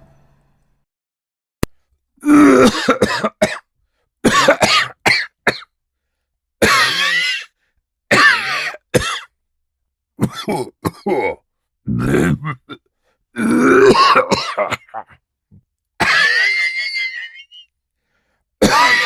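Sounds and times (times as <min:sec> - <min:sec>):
man coughing: 0:02.3 - 0:03.6, 0:04.3 - 0:05.7, 0:06.6 - 0:07.4, 0:08.1 - 0:09.3, 0:10.2 - 0:12.8, 0:13.4 - 0:15.2, 0:16.0 - 0:16.7, 0:18.6 - 0:19.0.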